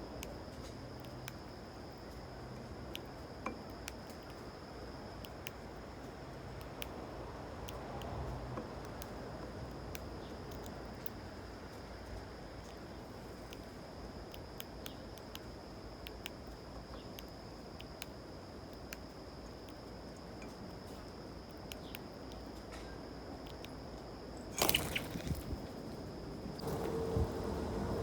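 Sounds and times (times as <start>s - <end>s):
insect trill: 9.2s - 28.0s.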